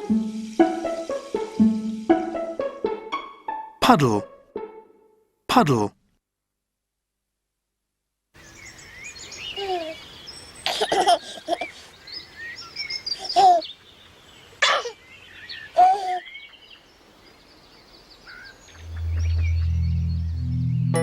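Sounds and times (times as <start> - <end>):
birds chirping and singing: 8.4 - 11.0, 11.6 - 21.0.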